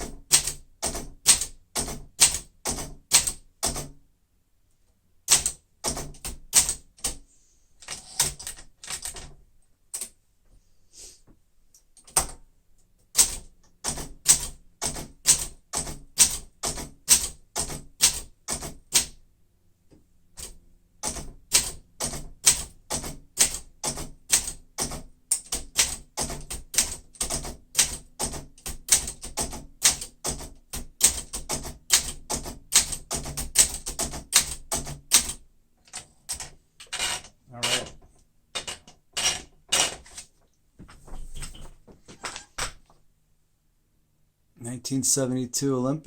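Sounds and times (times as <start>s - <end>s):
manual typewriter typing: 0.0s - 4.0s, 5.2s - 7.2s, 7.8s - 10.1s, 12.0s - 12.4s, 13.1s - 19.2s, 20.4s - 40.3s.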